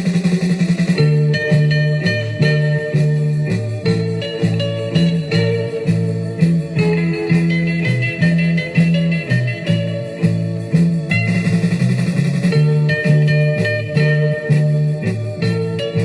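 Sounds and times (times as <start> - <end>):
blues guitar music: 0.0 - 16.0
repeating bass line: 0.0 - 16.0.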